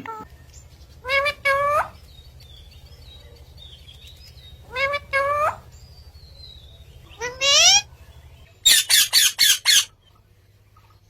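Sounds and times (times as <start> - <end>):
steady low hum: 0.0 - 11.0
parakeets squawking: 1.0 - 8.0, 8.6 - 10.0.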